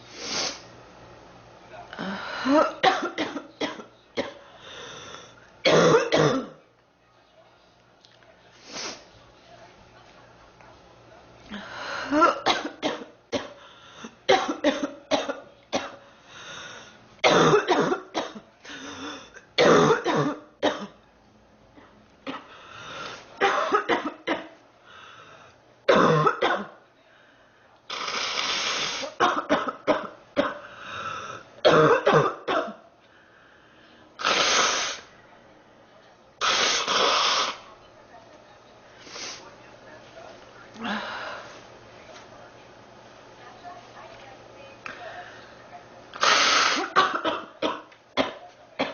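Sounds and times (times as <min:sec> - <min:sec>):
woman coughing: 0:02.0 - 0:04.4, 0:05.6 - 0:06.6, 0:12.1 - 0:16.0, 0:17.2 - 0:21.0, 0:23.4 - 0:24.6, 0:25.9 - 0:26.8, 0:29.0 - 0:30.6, 0:31.6 - 0:32.8, 0:46.2 - 0:48.9.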